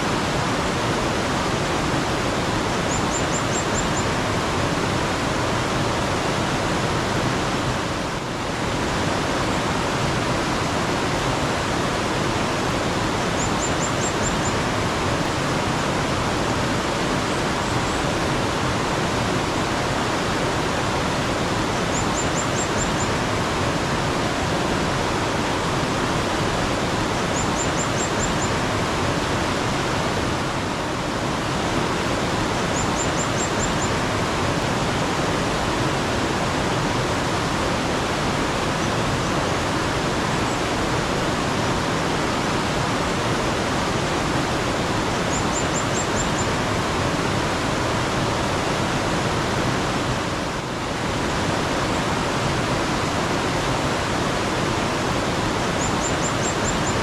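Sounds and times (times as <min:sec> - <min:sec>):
stream water rushing: 0:00.0 - 0:57.0
small bird calling: 0:02.7 - 0:04.2, 0:12.7 - 0:15.4, 0:21.8 - 0:23.2, 0:26.7 - 0:29.3, 0:32.0 - 0:34.6, 0:45.2 - 0:46.7, 0:55.6 - 0:57.0.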